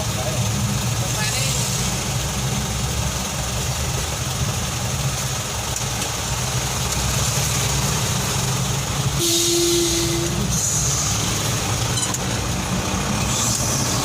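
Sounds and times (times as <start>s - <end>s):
diesel engine idling: 0.0s - 14.0s
hiss of air: 9.2s - 11.6s.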